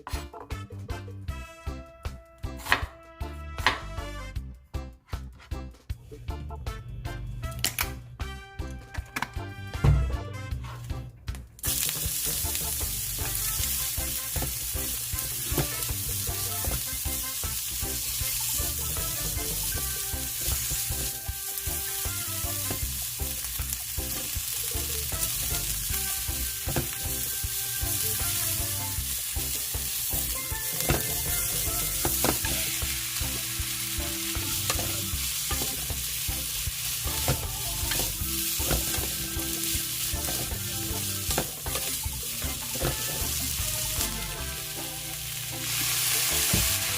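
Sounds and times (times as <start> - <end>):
food sizzling in hot oil: 11.6 - 46.9.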